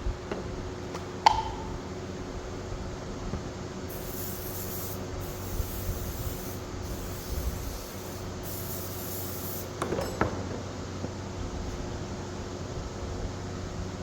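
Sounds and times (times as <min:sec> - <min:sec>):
aerosol spray can spraying: 0:03.9 - 0:09.7.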